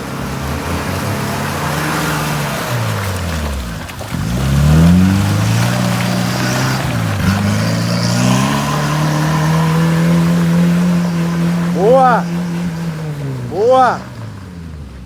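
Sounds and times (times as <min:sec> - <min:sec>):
car engine revving: 0:04.1 - 0:15.0.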